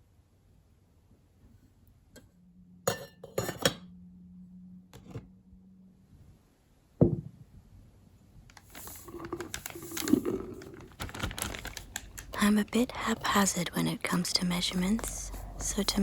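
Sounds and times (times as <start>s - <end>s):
glass and kitchenware clinking: 2.9s - 3.8s
rustling: 8.5s - 13.5s.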